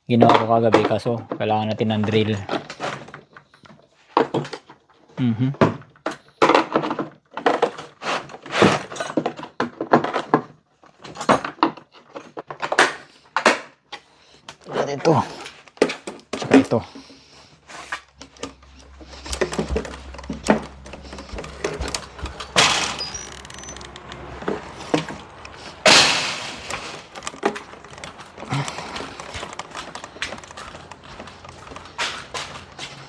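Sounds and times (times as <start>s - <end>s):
metal parts clattering: 17.7s - 33.0s
tools knocking and clicking: 18.1s - 32.7s.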